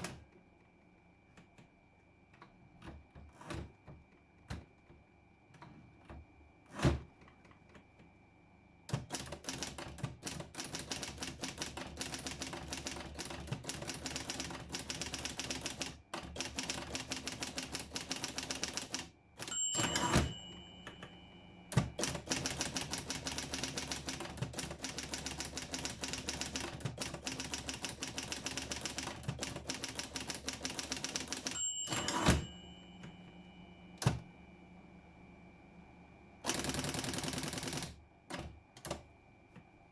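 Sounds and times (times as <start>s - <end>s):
electric typewriter keystrokes: 0.0s - 0.2s, 8.9s - 33.2s, 34.0s - 34.2s, 36.4s - 39.0s
faint motor hum: 0.0s - 39.9s
typewriter loud clunk: 16.4s - 21.0s, 21.7s - 32.7s.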